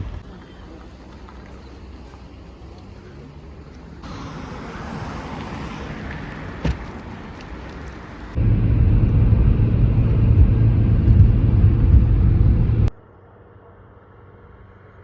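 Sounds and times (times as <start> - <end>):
car driving rumble: 0.0 - 12.9
faint low hum: 8.4 - 15.0.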